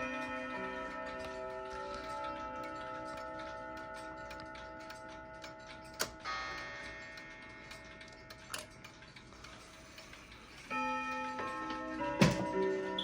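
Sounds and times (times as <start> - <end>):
wall clock ticking: 0.0 - 13.0
clock chime notes: 10.6 - 13.0.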